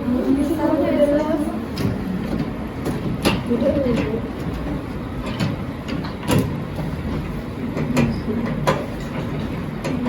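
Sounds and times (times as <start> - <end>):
low room rumble: 0.0 - 10.0
sharp knocks: 1.8 - 10.0.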